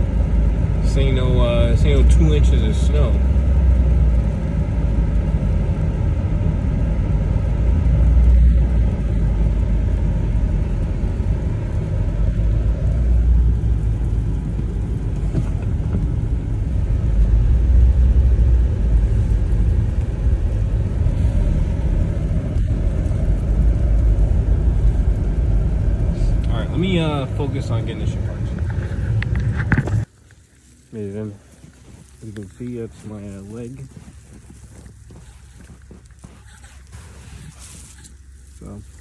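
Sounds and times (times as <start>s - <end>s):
engine and tyres on snow: 0.0s - 39.0s.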